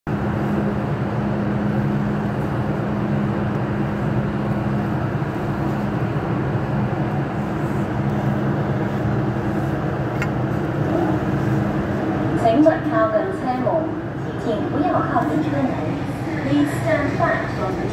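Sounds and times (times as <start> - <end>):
train car hum and rumble: 0.0 - 17.9.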